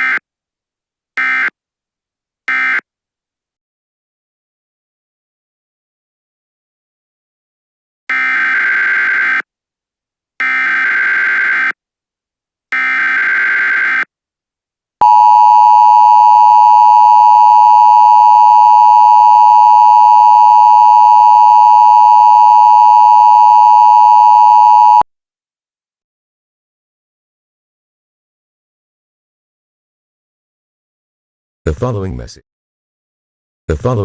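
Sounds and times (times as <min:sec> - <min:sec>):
two-tone attention signal: 0:15.0 - 0:25.0.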